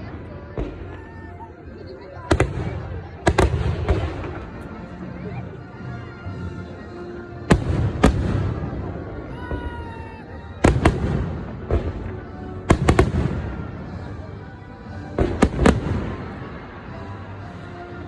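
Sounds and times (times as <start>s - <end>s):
fireworks exploding: 0.0s - 1.4s, 2.2s - 4.8s, 7.4s - 14.1s, 15.1s - 17.2s
background music: 0.0s - 18.0s.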